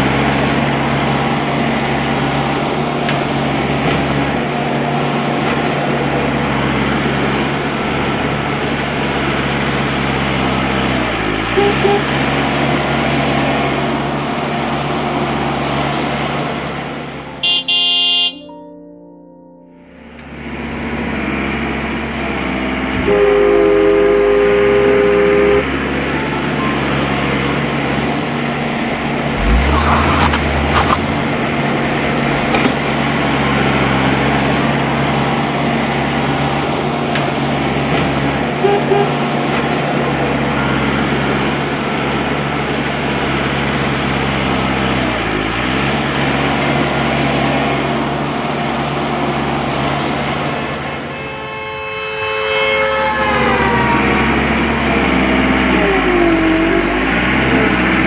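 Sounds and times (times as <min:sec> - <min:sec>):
two-tone horn: 0:11.5 - 0:12.4, 0:17.4 - 0:18.7, 0:22.9 - 0:27.4, 0:28.5 - 0:32.9, 0:38.6 - 0:39.6, 0:50.3 - 0:57.7.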